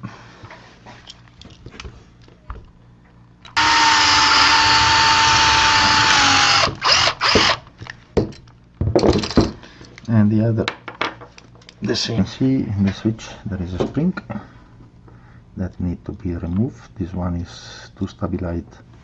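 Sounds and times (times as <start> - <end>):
electric drill drilling: 3.6 - 7.6.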